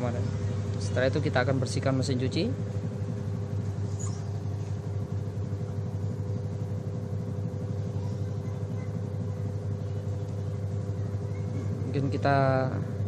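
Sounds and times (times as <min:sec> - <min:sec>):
washing machine spinning: 0:00.0 - 0:13.0.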